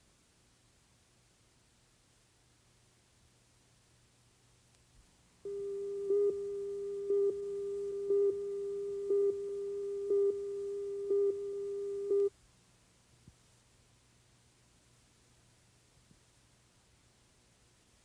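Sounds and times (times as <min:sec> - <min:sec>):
electronic beeps: 0:05.5 - 0:12.3.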